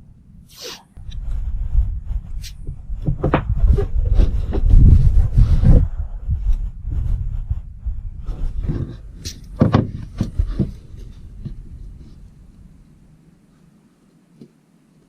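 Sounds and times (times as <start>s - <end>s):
low rumbling: 0.0s - 13.6s
knocks and bumps from handling: 8.6s - 11.6s.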